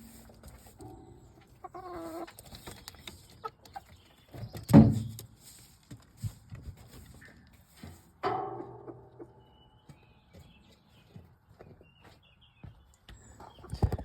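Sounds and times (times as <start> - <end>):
hens clucking: 0.0 - 4.4.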